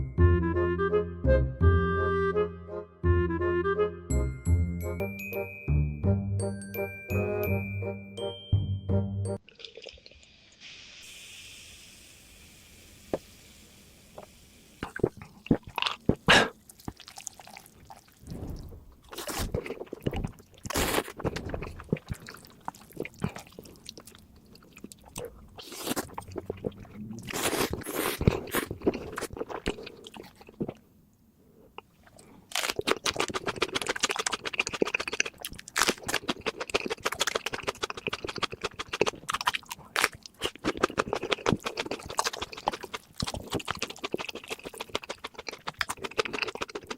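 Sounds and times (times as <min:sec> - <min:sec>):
crunchy food being chewed: 0:14.9 - 0:18.3, 0:19.0 - 0:30.8, 0:31.7 - 0:46.9.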